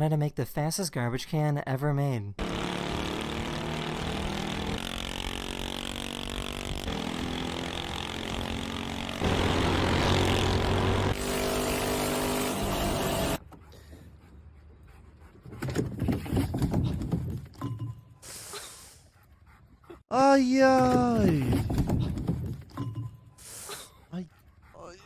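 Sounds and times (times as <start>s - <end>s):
motorised garbage can engine revving: 2.4s - 13.4s.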